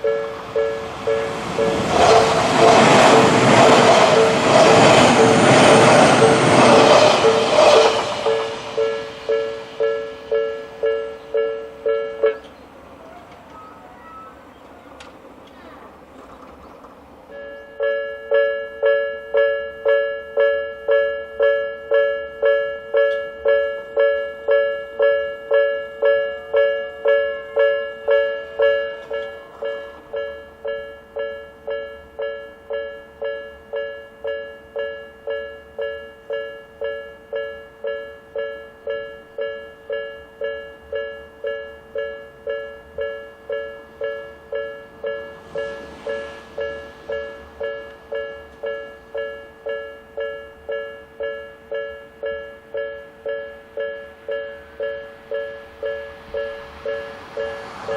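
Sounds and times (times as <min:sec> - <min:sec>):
level crossing two-tone bell: 0:08.3 - 0:12.4, 0:17.3 - 0:57.9.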